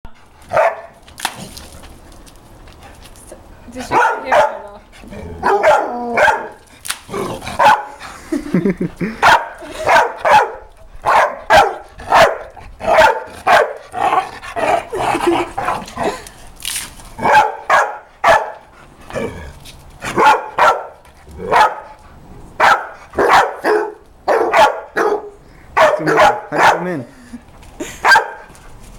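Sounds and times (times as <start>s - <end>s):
dog barking: 0.5s - 1.0s, 3.9s - 4.6s, 5.4s - 6.6s, 7.6s - 8.0s, 9.2s - 13.8s, 17.2s - 18.6s, 20.2s - 21.9s, 22.6s - 26.9s, 28.0s - 28.5s.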